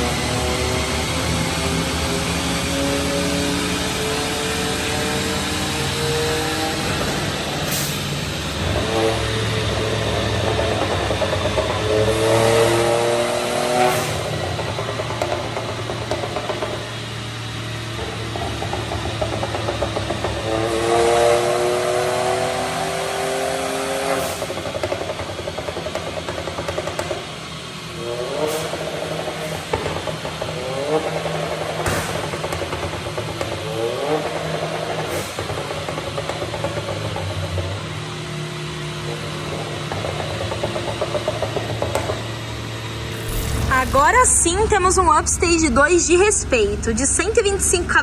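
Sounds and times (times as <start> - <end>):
car engine revving: 0.0 - 45.8
exhaust cracks: 0.2 - 47.8.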